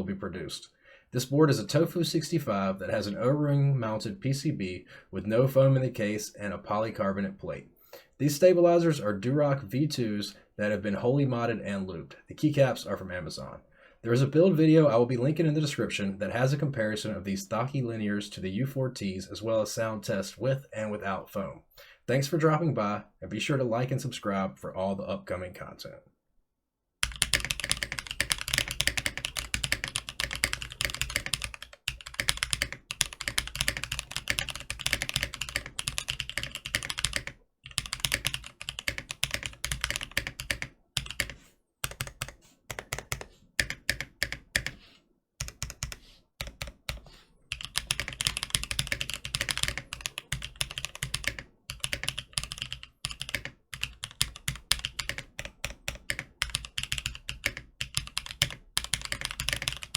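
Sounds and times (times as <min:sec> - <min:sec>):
typing on mechanical keyboard: 0:27.0 - 0:44.8, 0:45.4 - 0:59.9.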